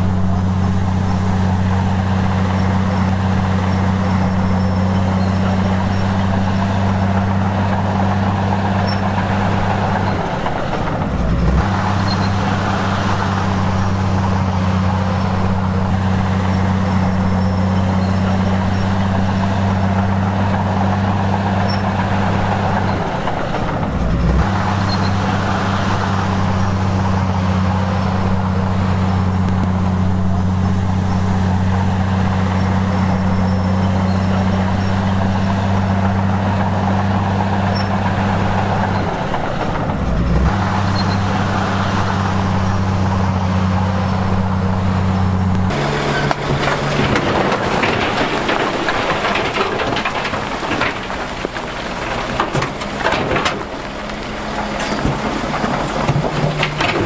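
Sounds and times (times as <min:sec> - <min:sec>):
bulldozer diesel engine running: 0:00.0 - 0:57.0.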